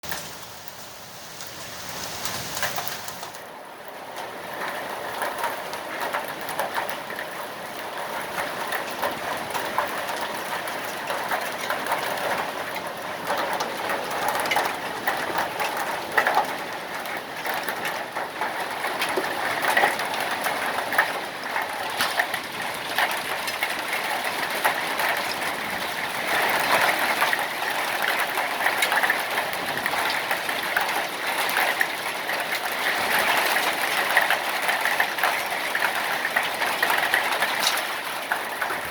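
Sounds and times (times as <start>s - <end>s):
hail clattering: 0.0s - 3.4s
heavy rain: 0.0s - 38.9s.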